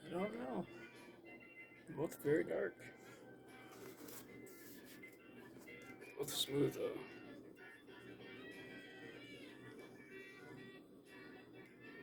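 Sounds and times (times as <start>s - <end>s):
faint background music: 0.0s - 12.0s.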